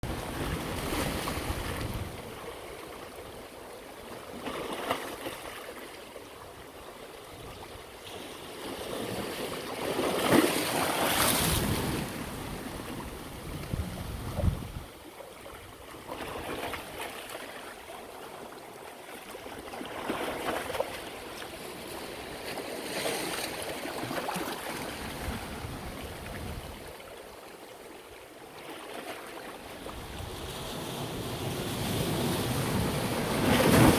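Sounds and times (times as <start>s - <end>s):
sea waves breaking: 8.0s - 27.1s, 28.7s - 33.9s.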